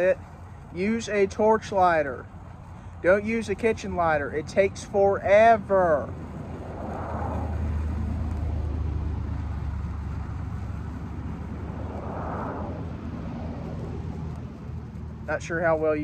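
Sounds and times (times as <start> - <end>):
motor vehicle rumbling: 0.0 - 16.0
soft rushing swell: 6.3 - 14.4.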